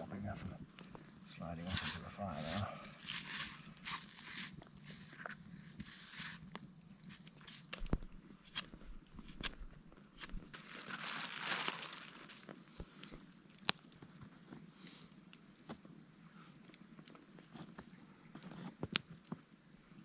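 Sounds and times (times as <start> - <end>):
campfire crackling and popping: 0.0 - 20.0
hissing rush: 1.2 - 6.5.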